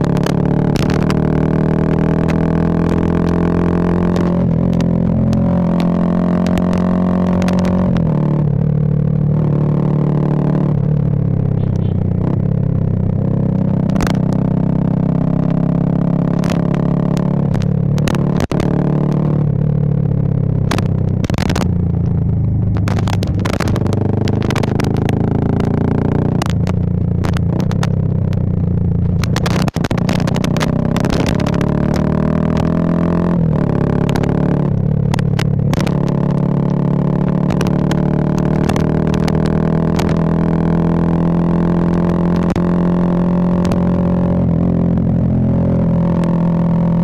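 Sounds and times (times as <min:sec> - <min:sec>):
motorcycle engine running: 0:00.0 - 0:47.0
microphone crackles: 0:11.4 - 0:12.6, 0:20.4 - 0:32.8, 0:33.4 - 0:40.3.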